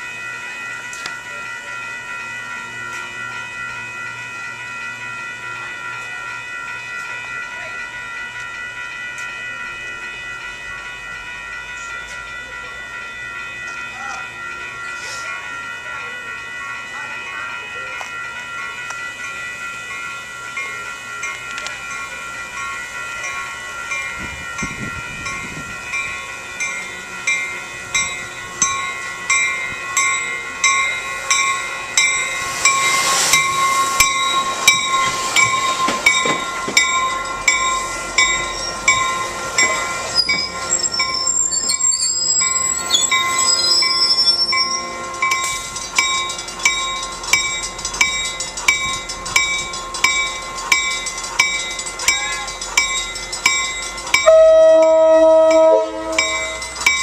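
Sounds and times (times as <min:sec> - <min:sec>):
crossing bell ringing: 0:00.0 - 0:57.0
train wheels squealing: 0:30.0 - 0:57.0
locomotive horn blast: 0:54.2 - 0:56.7.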